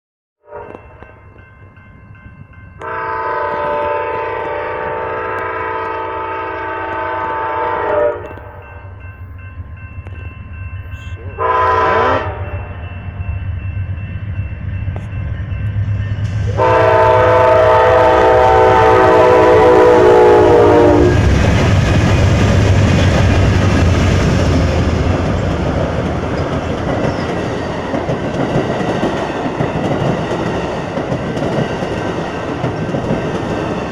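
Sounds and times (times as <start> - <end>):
train air horn blasts: 0.4 - 1.0, 2.8 - 8.6, 11.0 - 12.7, 16.5 - 21.3
train wheels clacking over rails: 20.8 - 33.9.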